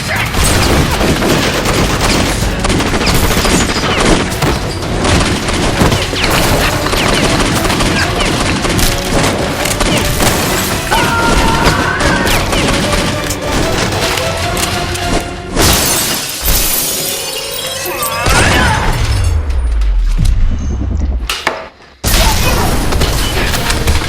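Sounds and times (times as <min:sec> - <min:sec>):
rapid gunfire: 0:00.0 - 0:14.4, 0:22.2 - 0:24.0
music: 0:00.2 - 0:21.3, 0:22.2 - 0:24.0.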